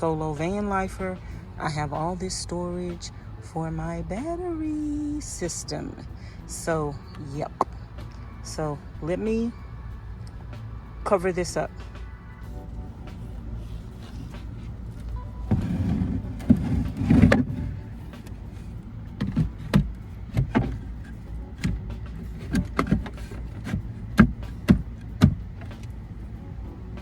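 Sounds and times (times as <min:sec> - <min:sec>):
steady low hum: 0:00.0 - 0:27.0
wooden boards scraping: 0:13.8 - 0:18.4.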